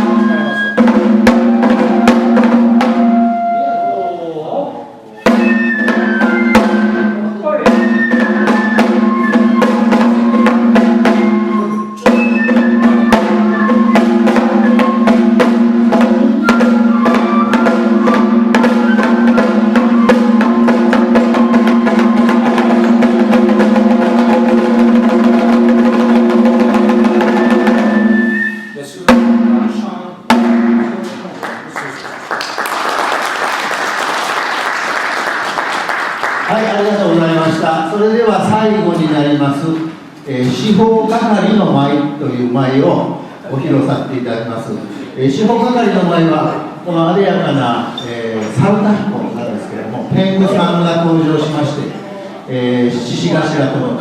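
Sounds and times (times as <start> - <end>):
fast drum strokes: 0.0 - 3.9, 5.2 - 31.8
held pitched tone: 0.0 - 25.2
applause: 31.3 - 37.5.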